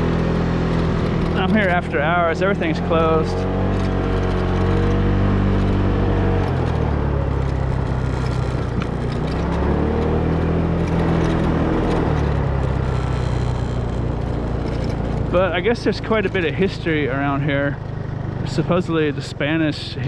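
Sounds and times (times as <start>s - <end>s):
vehicle engine running: 0.0s - 20.0s.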